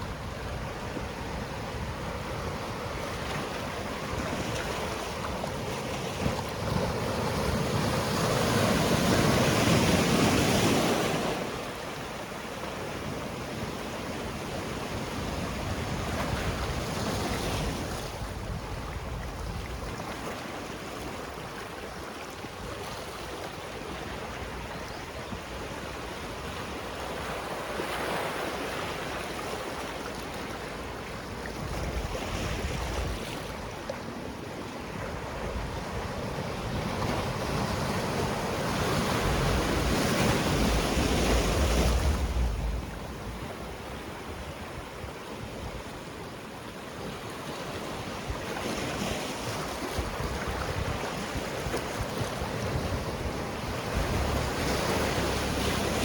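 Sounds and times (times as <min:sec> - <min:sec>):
sea waves breaking on shore: 0:00.0 - 0:56.0.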